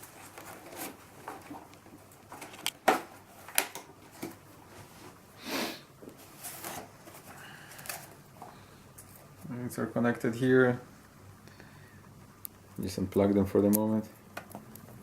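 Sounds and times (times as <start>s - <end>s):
rubbing and sliding sounds: 0.0s - 1.7s.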